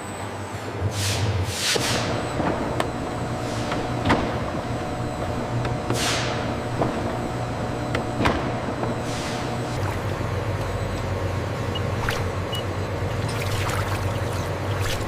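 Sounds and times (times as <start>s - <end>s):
machinery humming: 0.0s - 15.0s
hiss of released air: 5.9s - 6.4s.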